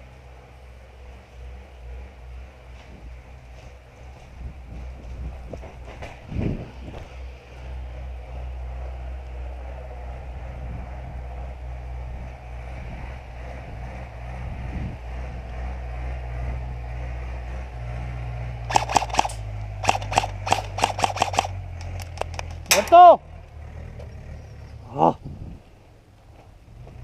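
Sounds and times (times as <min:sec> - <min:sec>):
low rumble: 0:00.0 - 0:26.0
airsoft gun firing: 0:18.7 - 0:21.6.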